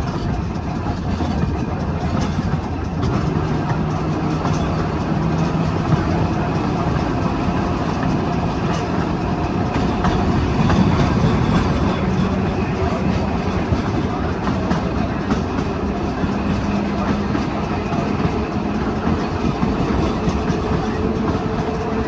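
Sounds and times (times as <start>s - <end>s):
trolley wheels rumbling on rail: 0.0s - 22.0s.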